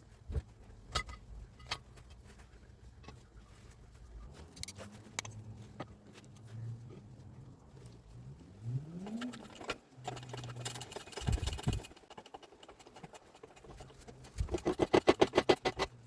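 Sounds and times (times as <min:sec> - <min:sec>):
faint low hum: 0:00.0 - 0:12.0
hard objects clicking and knocking: 0:09.1 - 0:16.0.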